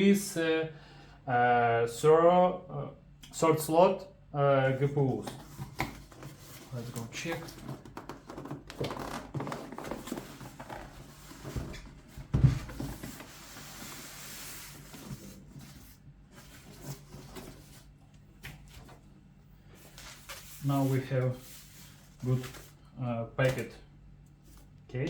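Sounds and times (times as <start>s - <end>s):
cardboard box knocks and rustles: 7.7s - 13.3s.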